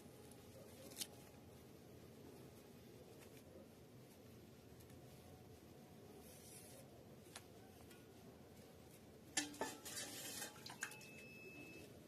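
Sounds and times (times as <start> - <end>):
kitchenware clinking and clattering: 9.4 - 11.3
short ringing tone: 10.8 - 11.9.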